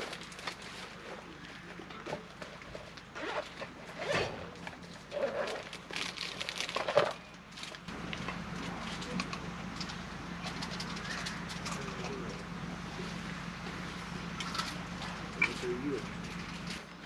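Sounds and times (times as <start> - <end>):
tent fabric rustling and scraping: 2.7 - 7.1.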